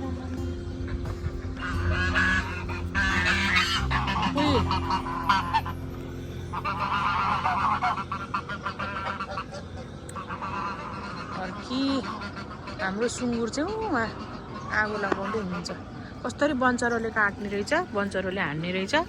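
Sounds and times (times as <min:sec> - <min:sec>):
ducks calling: 0:00.0 - 0:19.0
steady low hum: 0:00.0 - 0:19.0.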